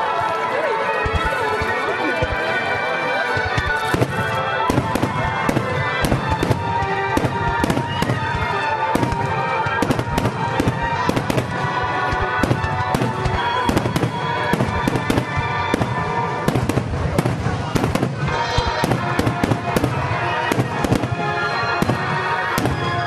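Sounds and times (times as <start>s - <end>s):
fireworks booming and cracking: 0.0s - 23.0s
music with sustained tones: 0.0s - 23.0s.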